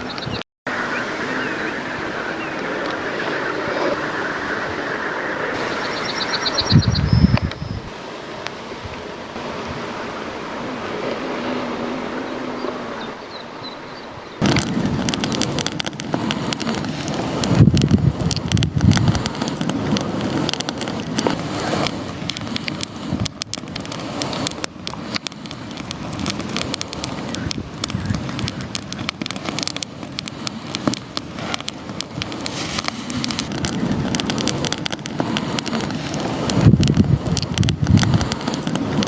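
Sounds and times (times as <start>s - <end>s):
campfire crackling: 0.0s - 39.0s.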